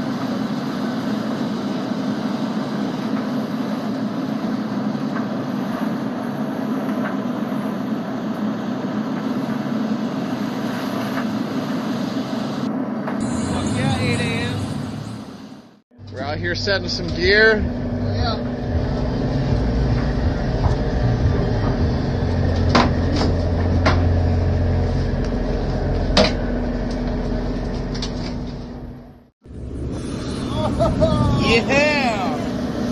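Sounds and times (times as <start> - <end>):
sea: 0.0 - 13.4
boat engine droning: 0.0 - 32.9
wind rushing: 16.8 - 32.9.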